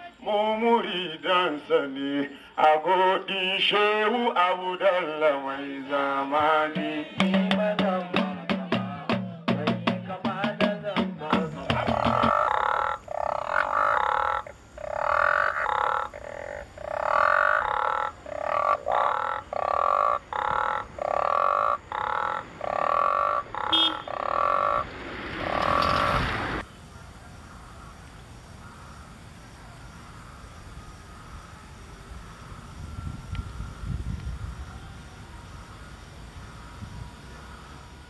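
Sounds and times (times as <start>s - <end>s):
frogs croaking: 10.8s - 38.0s
low background hiss: 24.7s - 38.0s.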